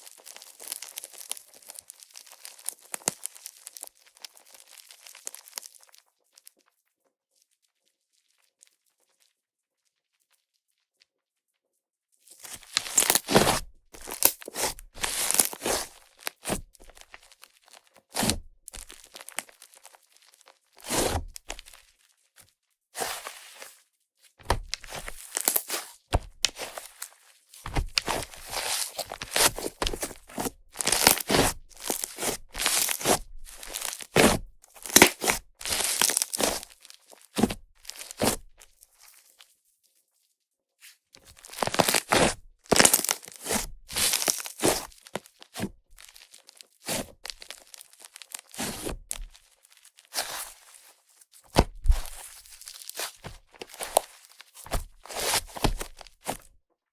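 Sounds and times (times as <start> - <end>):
clay slime squished and popping: 0.1 - 6.0, 12.4 - 22.0, 24.4 - 38.8, 41.2 - 50.7, 51.5 - 56.6.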